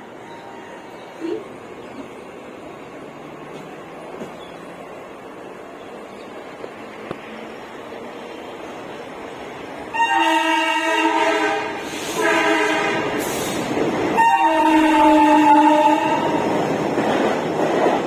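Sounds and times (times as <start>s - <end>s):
train rumbling: 0.0s - 18.0s
train air horn: 9.9s - 16.4s.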